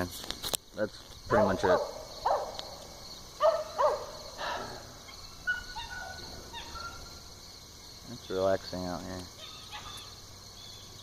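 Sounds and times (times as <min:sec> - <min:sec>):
insect chorus: 0:00.0 - 0:11.0
pitched animal calls: 0:03.4 - 0:07.3.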